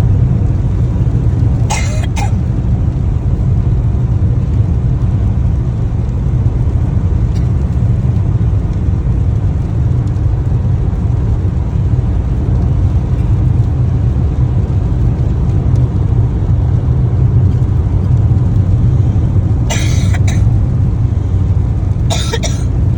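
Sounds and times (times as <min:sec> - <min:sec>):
car driving low rumble: 0:00.0 - 0:22.9
person coughing: 0:01.7 - 0:02.4, 0:19.7 - 0:20.5, 0:22.1 - 0:22.7.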